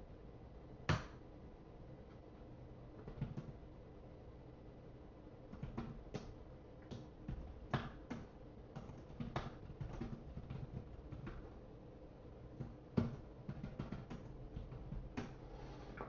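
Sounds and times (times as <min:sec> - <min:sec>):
computer keyboard typing: 0:07.3 - 0:11.5, 0:12.6 - 0:15.4.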